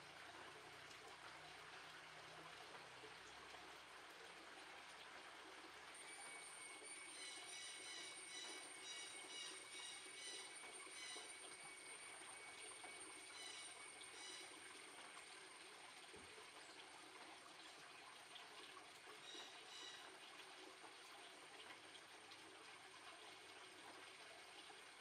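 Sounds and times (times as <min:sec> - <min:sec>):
faint high-pitched chirps: 0:06.0 - 0:14.6.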